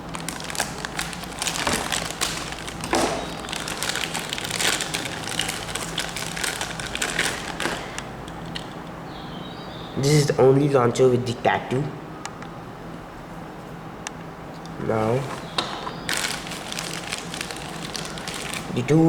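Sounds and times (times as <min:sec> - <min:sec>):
plastic packaging crinkling: 0:00.0 - 0:08.8, 0:15.1 - 0:19.0.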